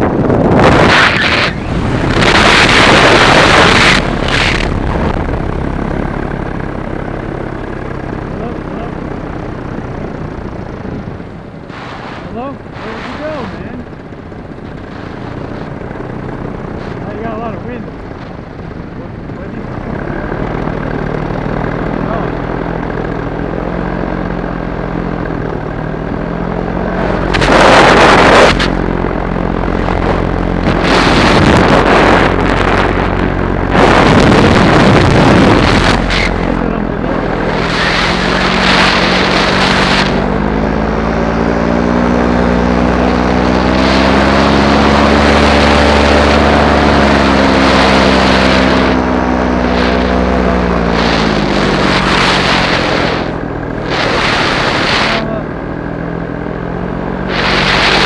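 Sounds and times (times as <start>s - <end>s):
wind gusts on microphone: 0.0s - 6.8s, 26.7s - 56.2s, 57.2s - 58.0s
paramotor engine and propeller: 0.0s - 58.0s.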